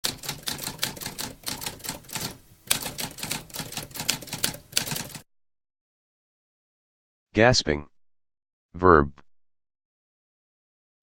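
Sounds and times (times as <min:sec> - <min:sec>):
typewriter keys clacking: 0:00.0 - 0:05.2.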